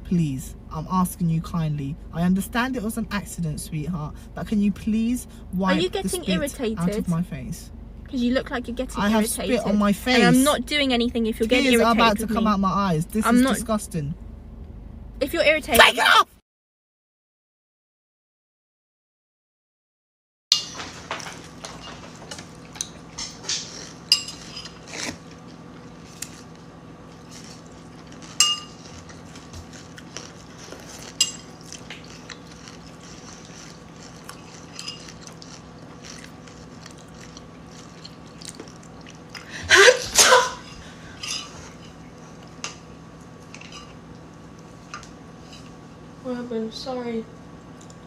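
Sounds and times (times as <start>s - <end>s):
faint steady hum: 0.0s - 16.2s, 20.6s - 48.0s
dishes and cutlery clinking: 20.5s - 25.1s, 27.3s - 36.2s, 40.6s - 42.8s, 43.5s - 44.0s
loud sneeze spraying milk: 39.7s - 40.7s.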